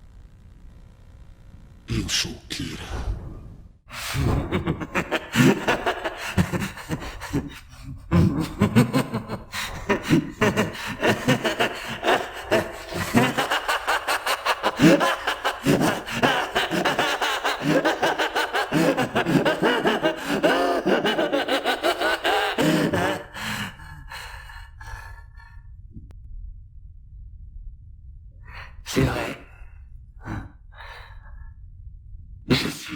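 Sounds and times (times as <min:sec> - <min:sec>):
man laughing maniacally: 0:04.0 - 0:24.4.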